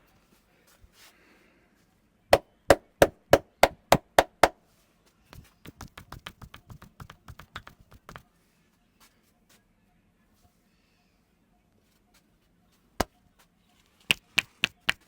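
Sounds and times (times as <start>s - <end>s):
quick light hand taps: 5.3s - 8.2s, 14.1s - 15.0s
hands slapping body: 5.4s - 8.2s, 14.1s - 15.0s.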